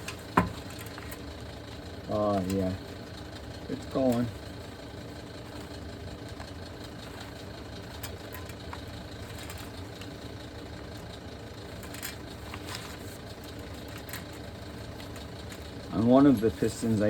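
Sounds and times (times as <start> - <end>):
steady machine hum: 0.0 - 17.0
brake piston clicks and scrapes: 6.4 - 10.2.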